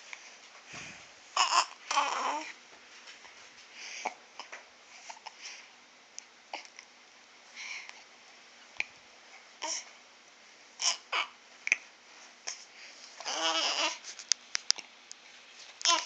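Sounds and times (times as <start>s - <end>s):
newborn baby hiccuping: 1.4s - 2.3s, 10.8s - 11.8s.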